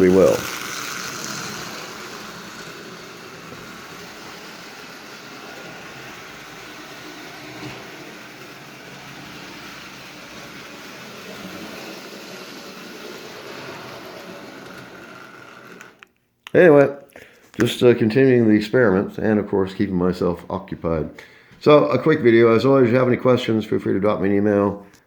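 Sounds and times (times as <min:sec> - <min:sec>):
small motor whirring: 0:00.0 - 0:16.1
wheels rolling on rails: 0:00.0 - 0:16.1.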